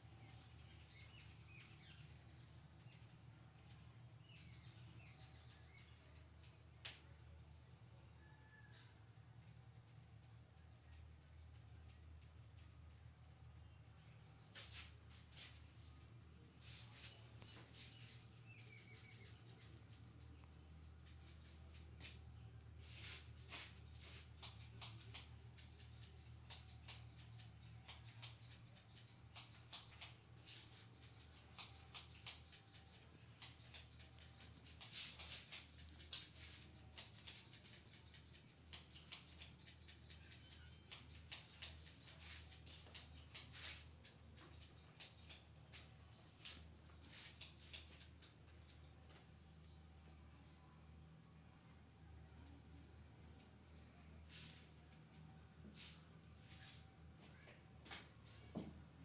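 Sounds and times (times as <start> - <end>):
fingers rubbing through hair: 22.8 - 49.0.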